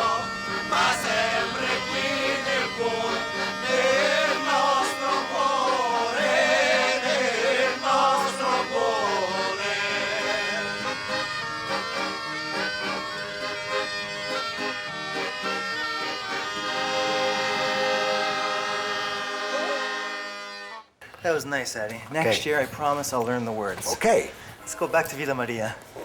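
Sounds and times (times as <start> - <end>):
person singing: 0.0 - 11.3
accordion chords: 0.0 - 21.0.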